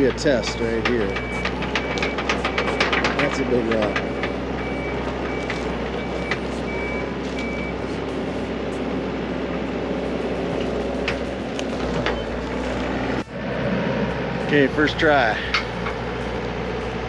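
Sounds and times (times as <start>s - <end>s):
motion alarm beeping: 0.0s - 8.0s
diesel engine running: 0.0s - 17.0s.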